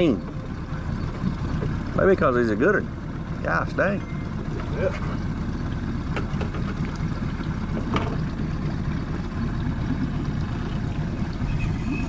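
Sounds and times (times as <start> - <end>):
outboard motor rumbling: 0.0 - 12.0
light knocks against boat: 7.8 - 8.3.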